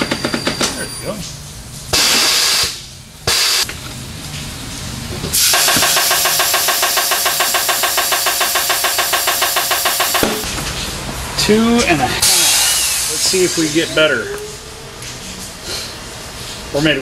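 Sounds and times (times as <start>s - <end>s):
wheel balancer spinning tyre: 3.6s - 11.7s.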